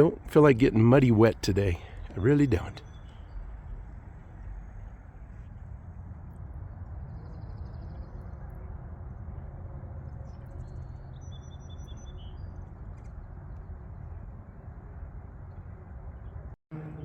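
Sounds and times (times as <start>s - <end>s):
small birds chirping: 0.0s - 5.0s, 10.4s - 13.2s
low background rumble: 0.0s - 17.0s.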